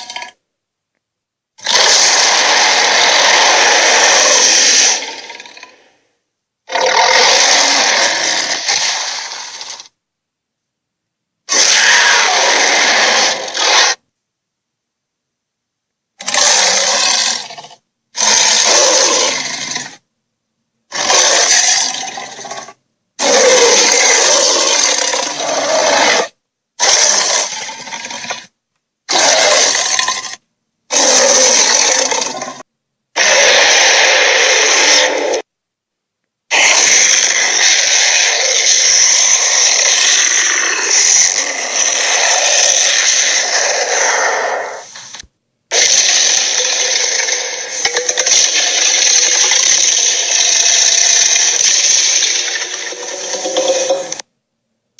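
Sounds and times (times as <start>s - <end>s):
rasping creature roars: 1.6s - 6.0s, 6.7s - 9.9s, 11.5s - 14.0s, 16.2s - 20.0s, 20.9s - 28.5s, 29.1s - 32.6s, 33.2s - 35.5s, 36.5s - 54.2s.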